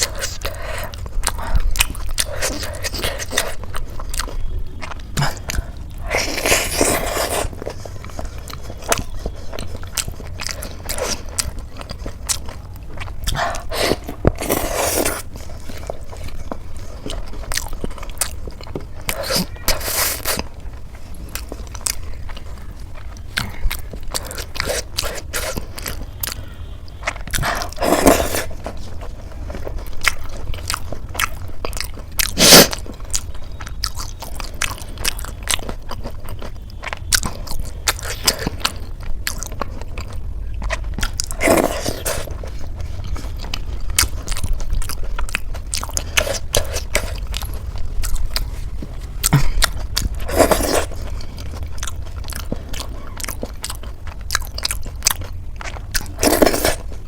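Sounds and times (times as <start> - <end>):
person chewing crunchy food: 0.0 - 57.0.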